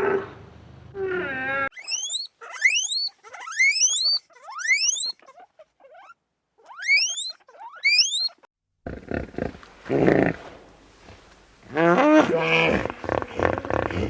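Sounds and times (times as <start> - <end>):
lower animal call: 0.9 - 6.1
small animal shrill squeals: 1.7 - 8.5.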